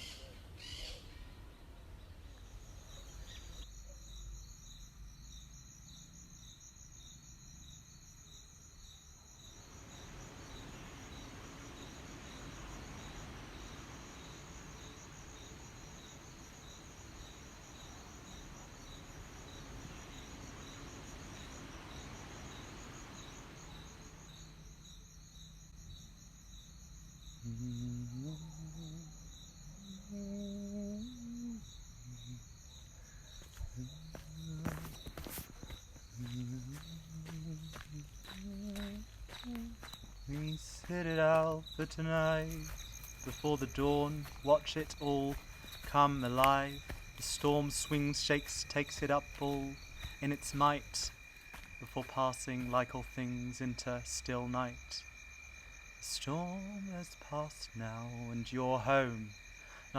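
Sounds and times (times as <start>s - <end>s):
crickets chirping: 0.0s - 59.9s
low voice humming: 27.4s - 32.5s.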